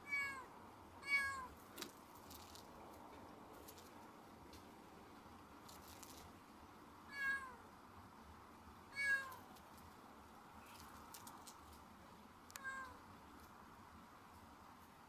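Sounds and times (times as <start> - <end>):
cat meowing: 0.0 - 1.5, 7.1 - 7.6, 9.0 - 9.4, 12.6 - 13.0.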